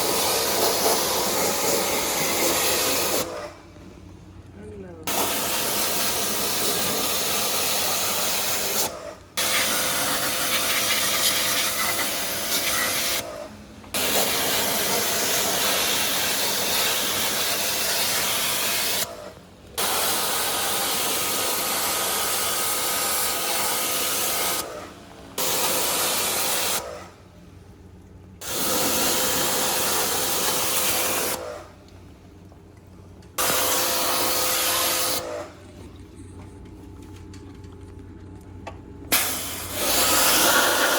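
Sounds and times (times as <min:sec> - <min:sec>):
pressure washer spraying water: 0:00.0 - 0:03.5, 0:05.1 - 0:13.4, 0:14.0 - 0:19.1, 0:19.8 - 0:24.8, 0:25.4 - 0:27.0, 0:28.4 - 0:31.7, 0:33.4 - 0:35.5, 0:39.1 - 0:40.9.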